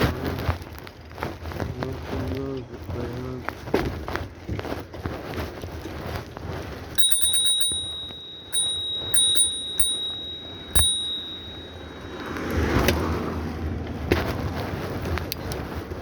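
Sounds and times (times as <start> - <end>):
bicycle riding noise: 0.0 - 16.0
bicycle bell ringing: 7.0 - 12.9.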